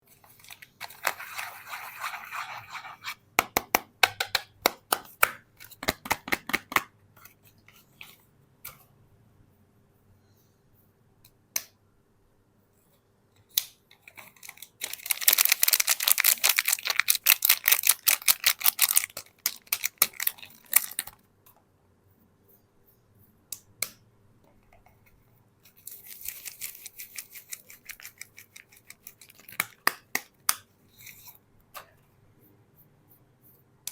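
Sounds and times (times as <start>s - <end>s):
wrapper crinkling: 14.3s - 21.2s, 25.8s - 29.6s.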